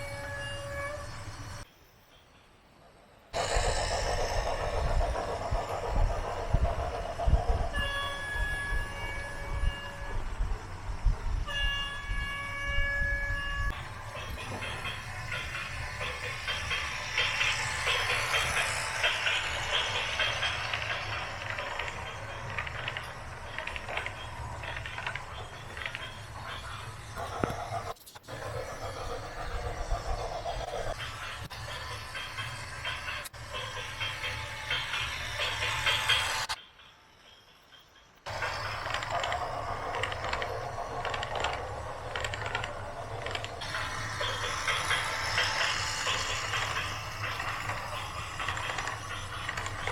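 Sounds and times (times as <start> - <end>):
machinery humming: 3.3 - 49.9
sharp metallic clicks and rattles: 14.1 - 26.6, 38.3 - 49.9.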